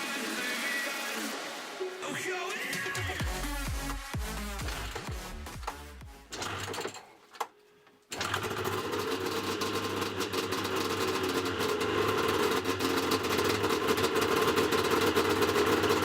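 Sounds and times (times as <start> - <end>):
music: 0.0 - 6.8
snowmobile engine idling: 9.6 - 16.0.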